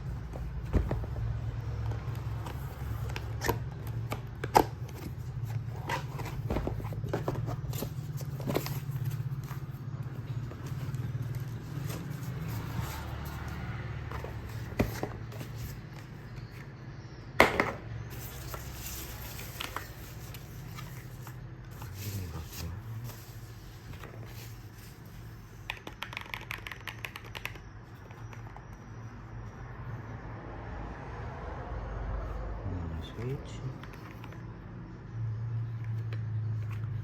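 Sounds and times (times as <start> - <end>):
packaging rustling and scraping: 0.1 - 16.6, 18.1 - 25.4.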